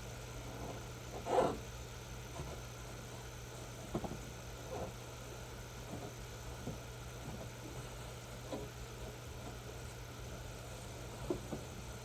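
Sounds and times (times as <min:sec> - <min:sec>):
faint clicks and knocks: 0:02.3 - 0:05.0, 0:05.8 - 0:10.0, 0:11.0 - 0:11.9.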